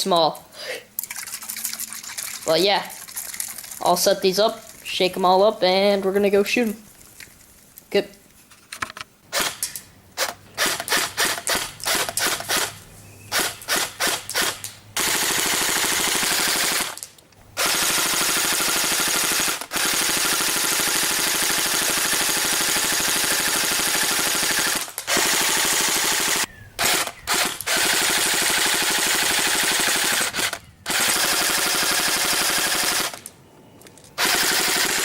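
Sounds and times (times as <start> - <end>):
airsoft gun firing: 9.3 - 12.7, 13.3 - 17.0, 17.6 - 33.2, 34.2 - 35.0.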